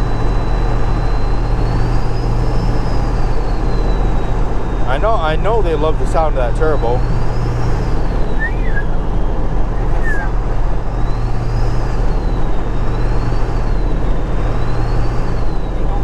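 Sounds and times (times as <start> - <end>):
diesel engine droning: 0.0 - 16.0
turbo whistle: 6.6 - 9.1, 9.7 - 10.4.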